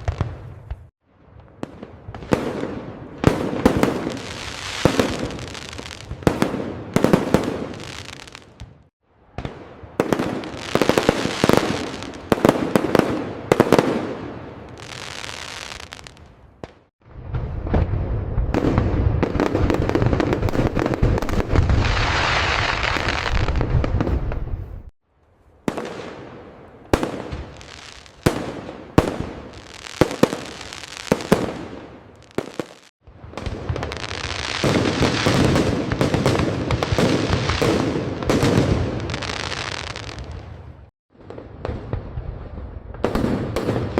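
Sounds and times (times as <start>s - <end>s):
fireworks booming and crackling: 0.0s - 24.9s, 25.6s - 43.9s
sharp firework bangs: 27.0s - 40.2s.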